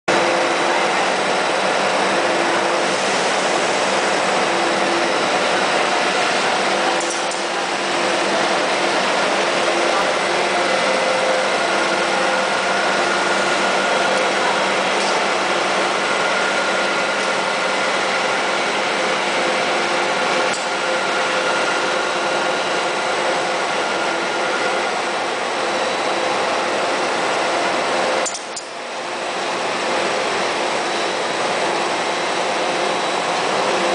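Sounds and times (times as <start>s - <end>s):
molding machine running: 0.1s - 33.9s.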